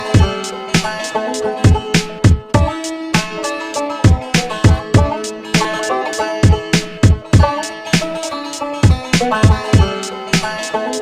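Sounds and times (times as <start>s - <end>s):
background music with drum beat: 0.0s - 11.0s.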